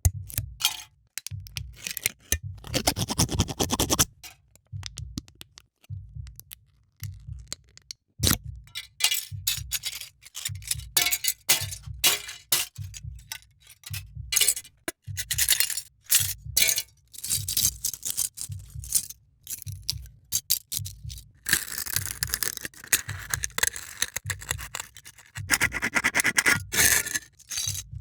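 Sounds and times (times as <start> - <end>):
background music with low beat: 0.0 - 0.7, 1.3 - 28.0
aluminium can scraped and crunched: 1.8 - 4.1, 21.5 - 27.9.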